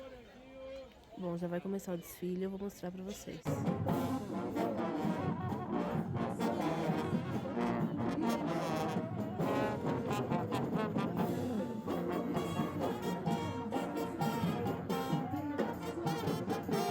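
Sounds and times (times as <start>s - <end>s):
brass band playing: 3.4s - 16.9s
drum beat: 3.4s - 16.9s.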